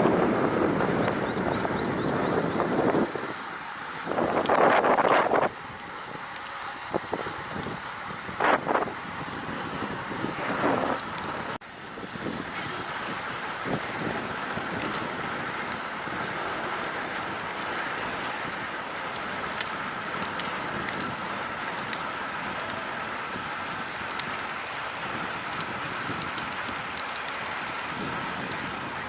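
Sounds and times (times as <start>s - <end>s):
tyre and road noise: 0.0s - 29.0s
wind buffeting microphone: 0.0s - 29.0s
faint ticks: 16.8s - 28.8s.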